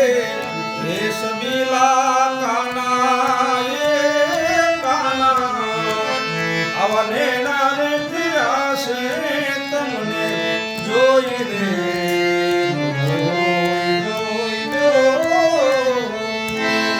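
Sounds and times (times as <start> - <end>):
person singing ornamented phrases: 0.0 - 12.2
harmonium chords: 0.0 - 16.9
tabla: 0.0 - 16.9.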